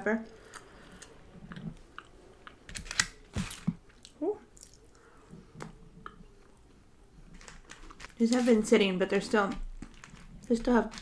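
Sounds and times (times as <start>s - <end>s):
crisp crunches: 7.3s - 11.0s.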